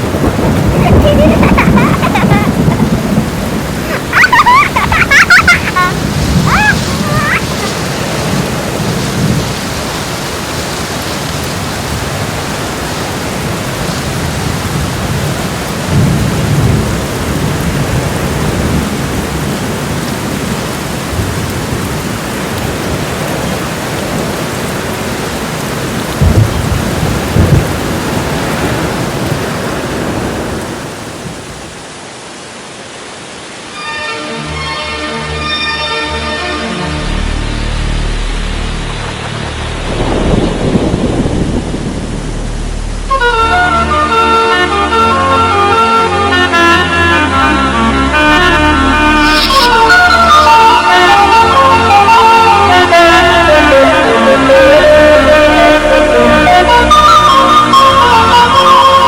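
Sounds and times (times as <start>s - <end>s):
waterfall rushing: 0.0s - 59.0s
music: 33.8s - 40.2s, 43.0s - 59.0s.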